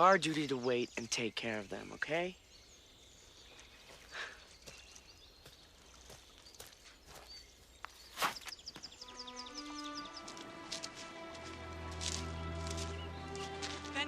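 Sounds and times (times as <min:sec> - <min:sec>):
bird chirping: 0:00.0 - 0:14.0
light footsteps: 0:03.5 - 0:14.0.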